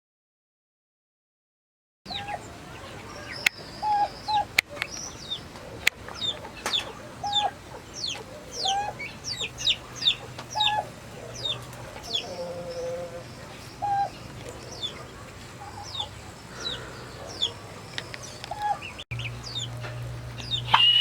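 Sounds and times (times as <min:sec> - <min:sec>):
turkey poults peeping: 0:02.1 - 0:21.0
turkeys calling: 0:02.1 - 0:21.0.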